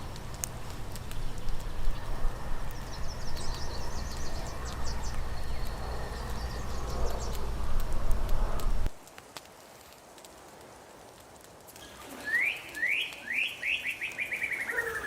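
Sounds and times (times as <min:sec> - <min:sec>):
small birds chirping: 0:00.0 - 0:08.8, 0:11.7 - 0:15.0
wind buffeting microphone: 0:00.0 - 0:09.0.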